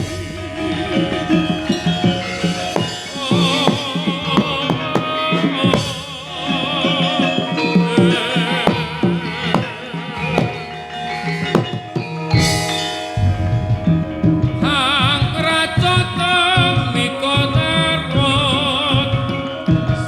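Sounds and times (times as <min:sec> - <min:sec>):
gong tones: 0:00.0 - 0:20.0
hand drum strokes: 0:00.0 - 0:20.0
high wavering melody: 0:00.0 - 0:20.0
metallophone tones: 0:00.0 - 0:20.0.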